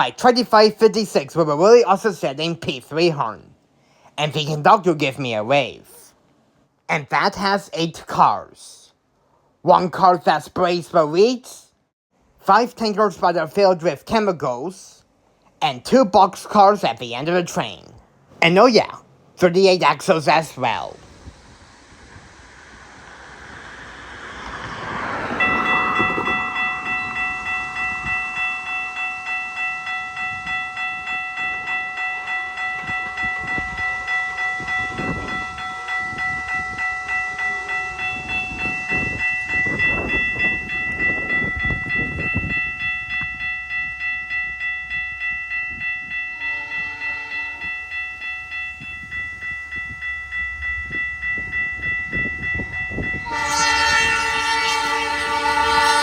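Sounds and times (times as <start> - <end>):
passing train rumble: 18.1 - 56.0
locomotive air horn chord: 46.3 - 47.8, 53.1 - 56.0.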